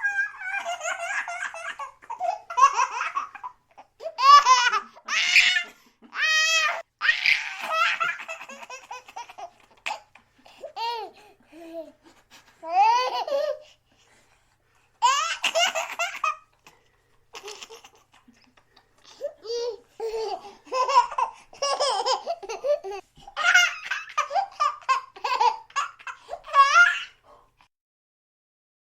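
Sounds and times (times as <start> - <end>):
small child giggling: 0.0 - 3.6, 19.2 - 27.1.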